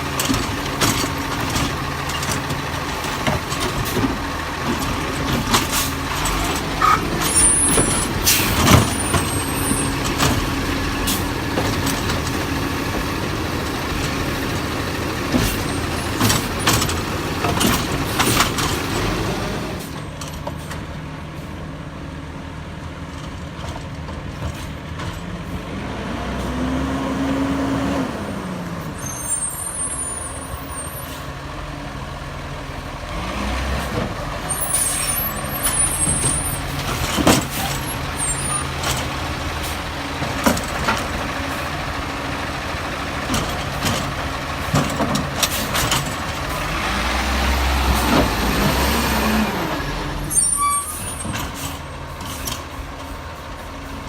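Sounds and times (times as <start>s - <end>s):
garbage truck engine running: 0.0s - 27.0s, 28.0s - 54.0s
sharp knocks and clanks: 35.9s - 41.7s.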